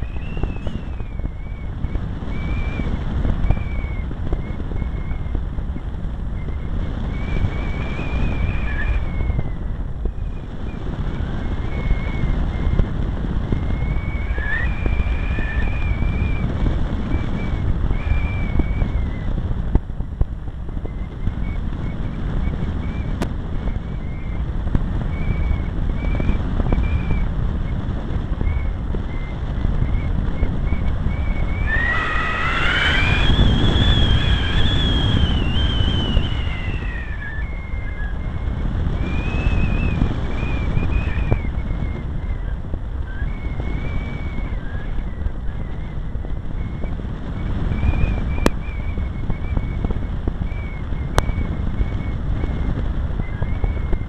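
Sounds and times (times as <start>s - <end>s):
wind buffeting on microphone: 0.0s - 54.0s
electric motor and propeller whine: 26.0s - 48.4s.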